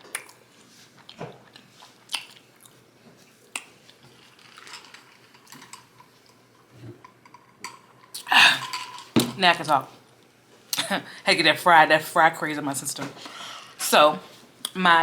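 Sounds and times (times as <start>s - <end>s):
chewing fries: 0.0s - 6.4s
wet mouth clicks and smacks: 0.1s - 0.4s, 2.1s - 2.8s.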